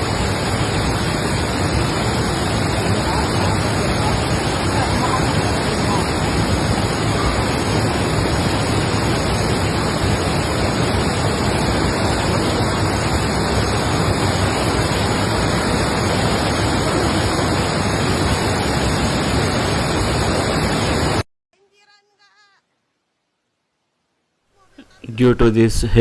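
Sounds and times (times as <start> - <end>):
water rushing: 0.0 - 18.4.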